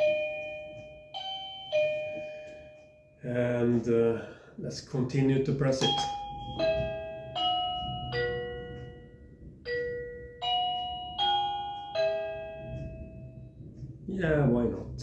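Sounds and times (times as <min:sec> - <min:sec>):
electronic doorbell chime melody: 0:00.0 - 0:03.2, 0:05.6 - 0:13.6.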